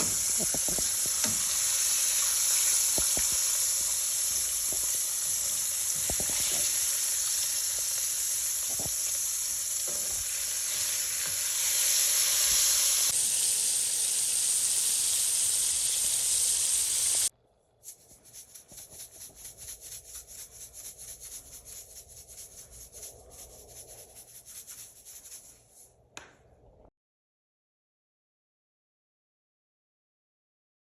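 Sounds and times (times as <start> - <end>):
oil crackling and popping: 0.0 - 14.4
fish frying in hot oil: 0.0 - 17.3.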